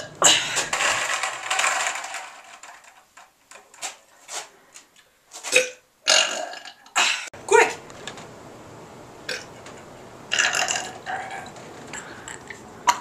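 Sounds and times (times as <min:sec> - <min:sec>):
man burping: 0:09.3 - 0:09.6, 0:10.3 - 0:13.0.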